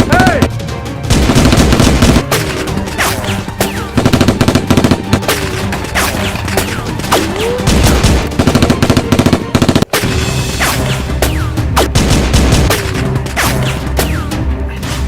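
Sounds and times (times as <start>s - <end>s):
machine-gun fire bursts: 1.1s - 2.3s, 3.9s - 5.3s.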